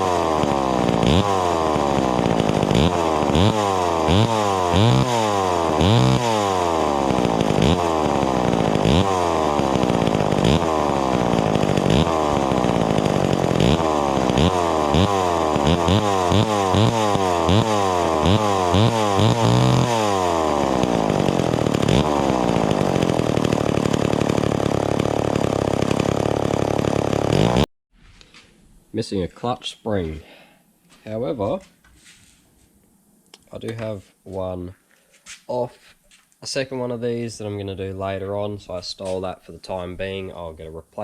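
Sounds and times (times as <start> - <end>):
chainsaw engine revving: 0.0 - 27.7.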